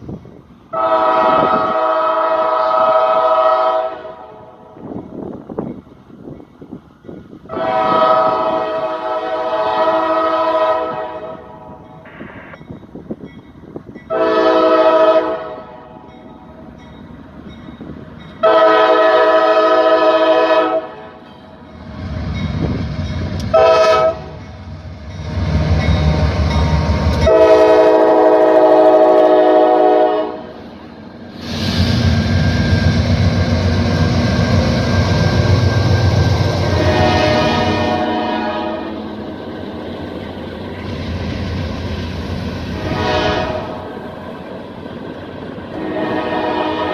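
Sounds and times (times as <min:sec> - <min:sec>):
diesel locomotive rumble: 0:00.0 - 0:46.9
train passing loudly: 0:00.0 - 0:46.9
locomotive air horn blasts: 0:00.7 - 0:04.5, 0:07.5 - 0:11.6, 0:14.1 - 0:16.0, 0:18.4 - 0:21.2, 0:23.5 - 0:24.4, 0:27.2 - 0:30.6, 0:35.4 - 0:39.2, 0:42.7 - 0:44.0, 0:45.7 - 0:46.9.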